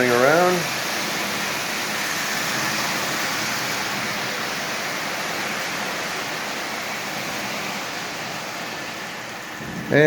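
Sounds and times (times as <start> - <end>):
model trains rolling on track: 0.0 - 10.0.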